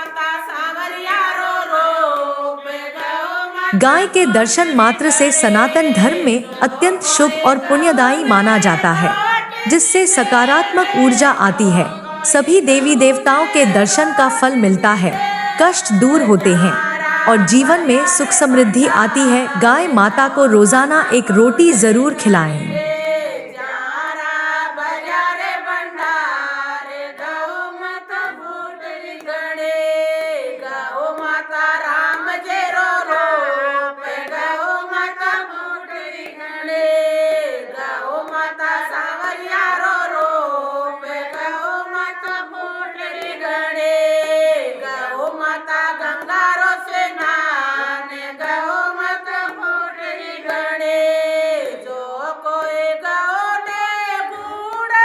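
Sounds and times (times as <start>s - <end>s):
person chanting in high voice: 3.6s - 23.4s.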